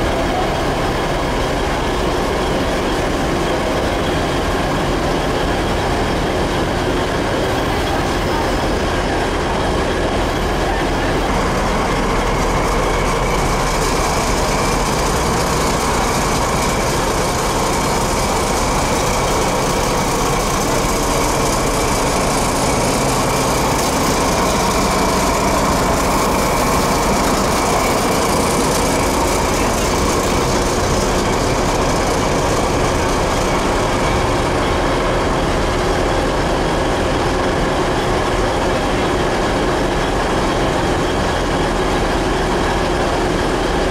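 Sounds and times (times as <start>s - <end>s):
diesel engine idling: 0.0s - 40.0s.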